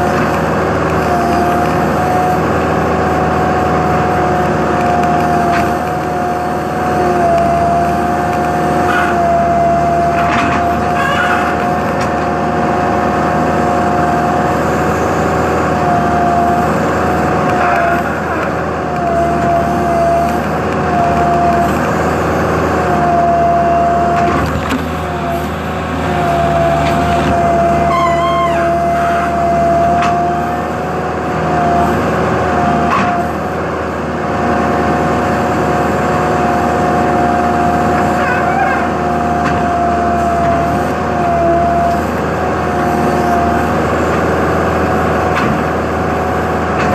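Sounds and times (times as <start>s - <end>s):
heavy machinery engine whining: 0.0s - 46.9s
brief squeal: 27.8s - 29.4s.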